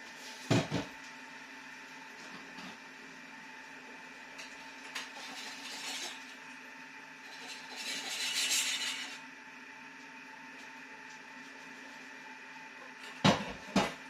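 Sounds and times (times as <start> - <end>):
steady background hum: 0.0 - 14.0
hissing oil and scraping: 4.4 - 6.4, 7.2 - 9.2.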